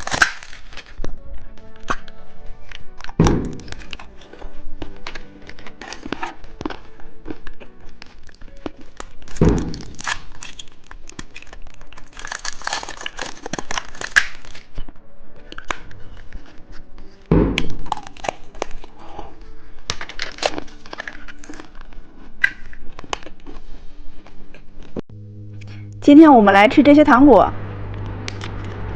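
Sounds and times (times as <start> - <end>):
plastic wrappers crinkling: 0.0 - 24.9
dull thumps: 17.3 - 17.7.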